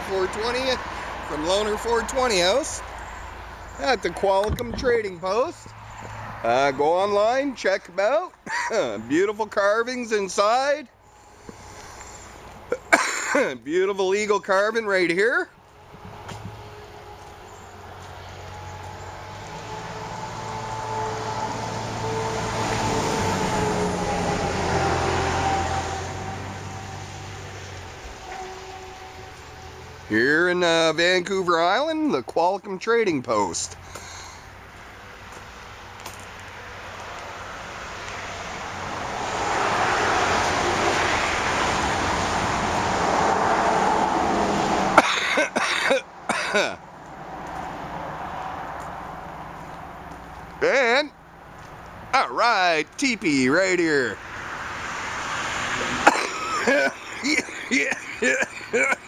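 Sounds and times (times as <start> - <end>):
vehicle passing by: 0.0 - 7.4, 15.6 - 32.4, 33.5 - 45.0, 46.9 - 52.2, 53.1 - 58.9
man coughing: 8.4 - 9.0, 12.7 - 13.5, 45.0 - 46.8, 56.0 - 59.0.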